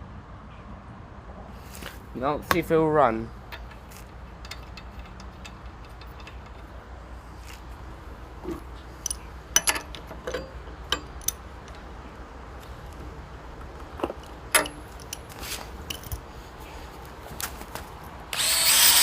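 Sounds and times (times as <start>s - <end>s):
low steady hum: 0.0s - 19.0s
light metallic clicks and knocks: 3.4s - 7.7s, 8.4s - 11.9s, 13.6s - 16.3s.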